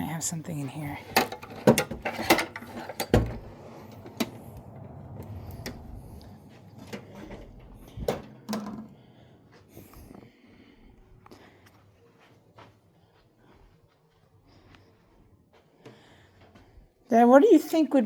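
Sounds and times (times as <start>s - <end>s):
objects clunking in drawer: 1.1s - 3.4s.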